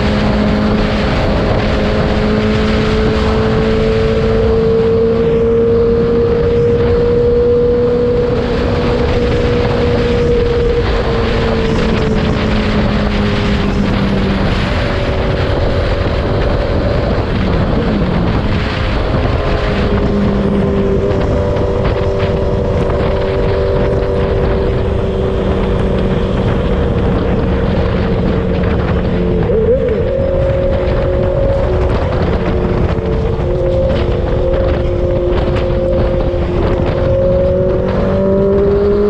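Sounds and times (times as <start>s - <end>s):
loud motorcycle engine cruising: 0.0s - 39.0s
wind buffeting microphone: 0.0s - 39.0s.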